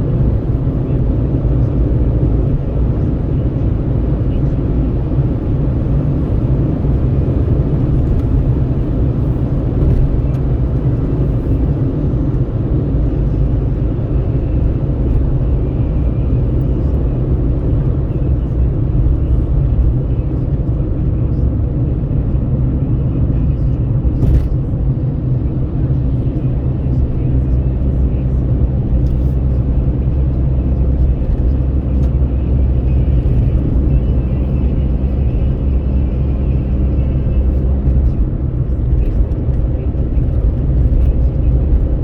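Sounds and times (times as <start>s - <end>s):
vehicle road and engine rumble: 0.0s - 42.0s.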